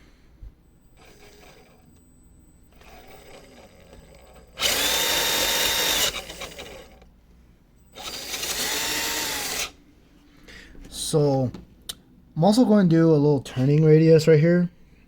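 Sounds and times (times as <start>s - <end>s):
electric motor whirring: 1.0s - 1.9s, 2.7s - 7.0s, 8.0s - 9.8s.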